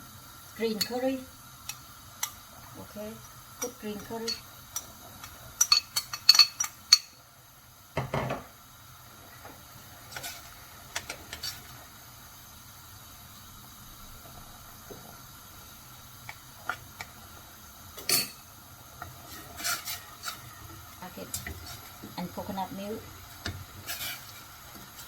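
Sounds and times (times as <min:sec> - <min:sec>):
spoon clinking against pot: 0:05.6 - 0:07.1, 0:18.0 - 0:18.4.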